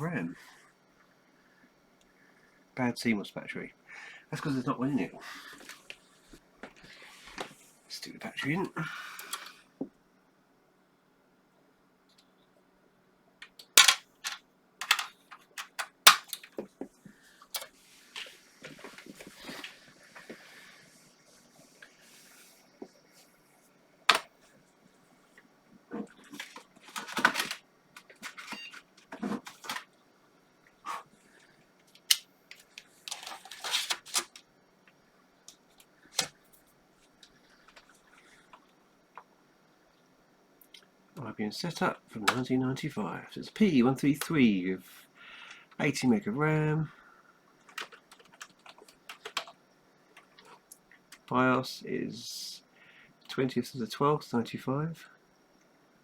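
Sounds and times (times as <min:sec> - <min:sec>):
sharp clicks of computer parts: 0:13.4 - 0:16.7, 0:24.1 - 0:24.3, 0:47.6 - 0:49.6.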